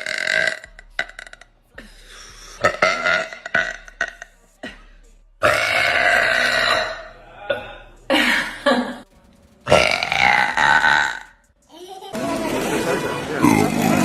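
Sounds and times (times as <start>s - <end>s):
woman belching: 0.0s - 1.5s, 2.6s - 4.2s, 5.4s - 7.6s, 9.8s - 11.2s.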